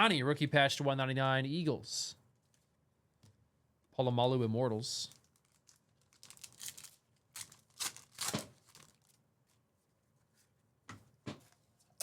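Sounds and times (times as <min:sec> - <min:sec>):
cards and packaging rustling: 0:05.1 - 0:09.6.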